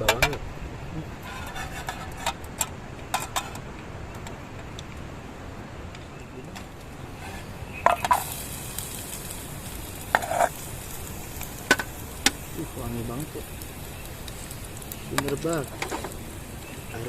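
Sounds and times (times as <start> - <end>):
food frying in hot oil: 6.1 - 17.0
metal utensils clinking on pan: 6.6 - 8.3, 15.2 - 16.2.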